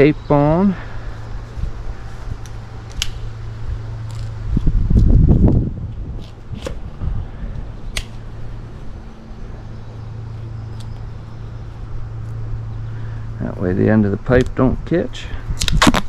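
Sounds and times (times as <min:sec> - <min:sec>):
heavy handling rumble: 0:00.0 - 0:16.0
steady low hum: 0:00.0 - 0:16.0
sharp clicks and crackles: 0:02.4 - 0:03.3, 0:04.0 - 0:04.4, 0:07.9 - 0:08.2
tape pulled off roll: 0:15.6 - 0:16.0.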